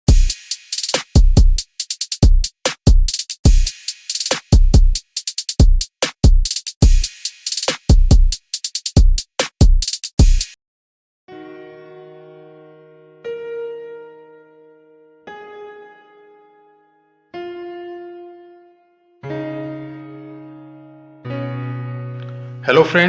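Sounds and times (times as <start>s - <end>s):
drum machine beat: 0.0s - 10.6s.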